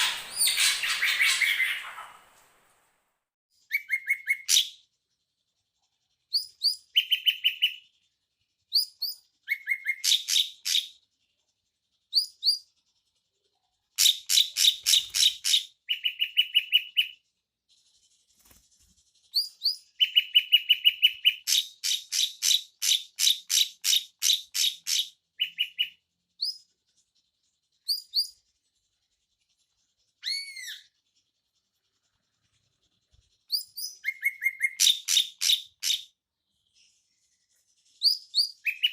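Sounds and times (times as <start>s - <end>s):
drongos chattering: 0.0s - 2.3s.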